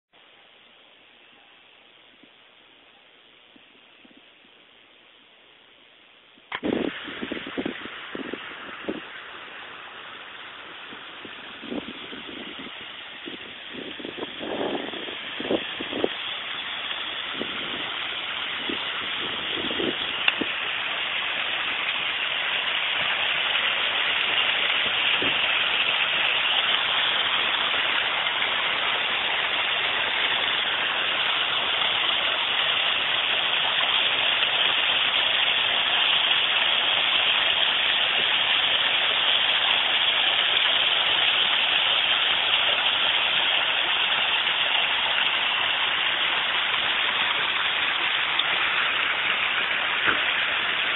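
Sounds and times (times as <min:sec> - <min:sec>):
small waterfall splashing: 0:06.5 - 0:50.9.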